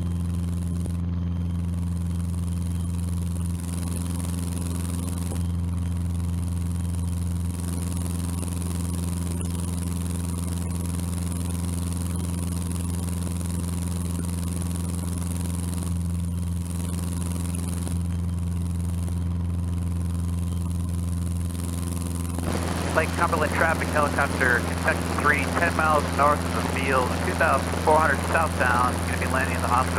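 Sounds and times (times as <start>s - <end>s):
airplane engine droning: 22.4s - 29.9s.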